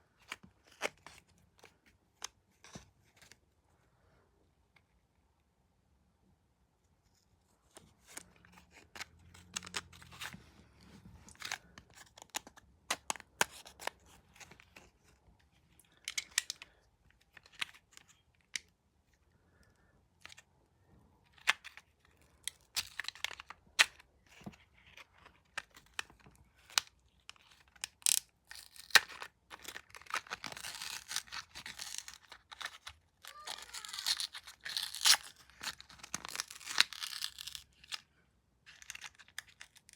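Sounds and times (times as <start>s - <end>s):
packaging clicks and rustles: 8.0s - 10.4s
paper or plastic tearing: 8.0s - 10.4s, 29.8s - 38.0s.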